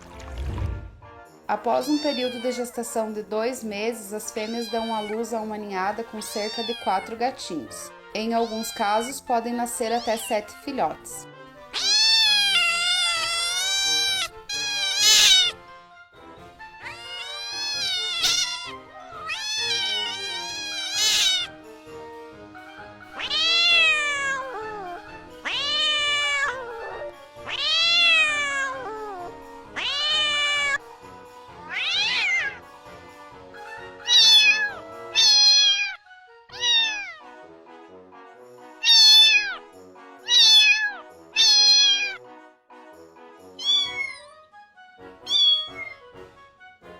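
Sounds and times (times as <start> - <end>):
kittens meowing: 1.8 - 2.9, 4.3 - 7.6, 8.2 - 10.6, 11.7 - 15.6, 16.8 - 21.6, 23.0 - 30.8, 31.6 - 32.6, 33.9 - 37.2, 38.8 - 39.6, 40.2 - 42.2, 43.5 - 44.4, 45.2 - 46.1.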